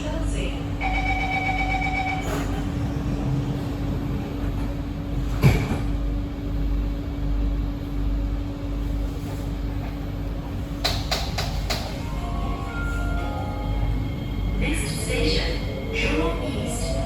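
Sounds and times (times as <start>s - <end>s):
train hum and rumble: 0.0s - 17.0s
train door chime beeping: 0.8s - 2.7s, 12.0s - 15.4s.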